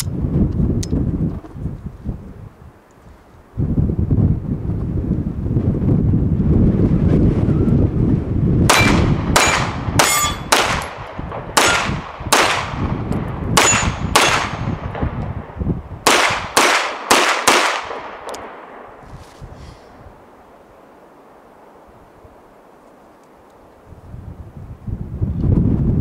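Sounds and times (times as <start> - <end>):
wind buffeting microphone: 0.0 - 20.9, 21.5 - 26.0
pistol shots echoing: 8.7 - 12.9, 13.6 - 15.2, 16.0 - 19.0.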